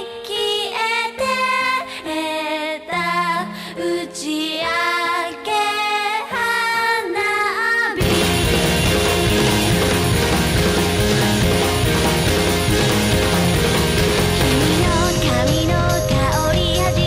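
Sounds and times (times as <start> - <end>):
loud dense rock music: 8.0 - 17.0
woman singing long held notes: 14.5 - 17.0.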